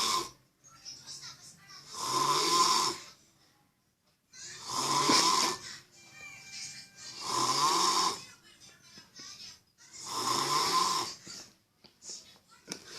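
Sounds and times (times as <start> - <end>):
person snoring loudly: 0.0 - 0.4, 1.9 - 3.0, 4.6 - 5.6, 7.1 - 8.2, 10.0 - 11.2.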